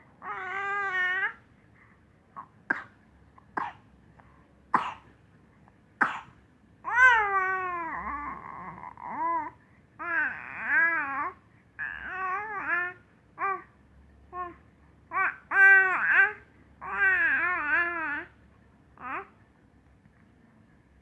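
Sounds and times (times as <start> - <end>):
baby coughing: 2.4 - 3.0, 3.6 - 3.8, 4.7 - 5.1, 6.0 - 6.4.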